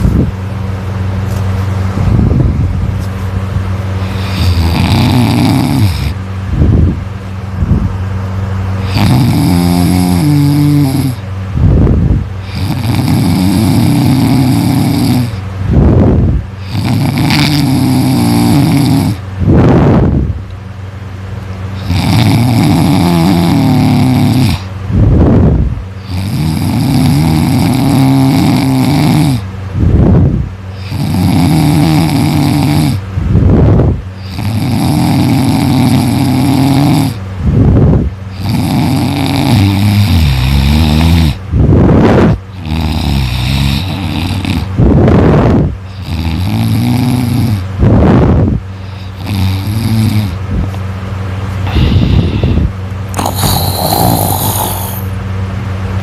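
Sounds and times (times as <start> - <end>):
person snoring loudly: 4.0 - 6.2, 8.8 - 11.2, 12.4 - 15.4, 16.0 - 20.0, 21.8 - 24.7, 26.0 - 29.5, 30.8 - 37.2, 38.3 - 50.4, 51.6 - 55.2.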